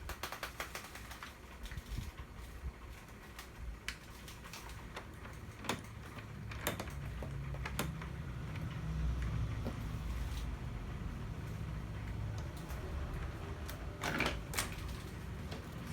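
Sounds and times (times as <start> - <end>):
toy truck clicks and ticks: 0.0 - 2.0, 3.0 - 9.6.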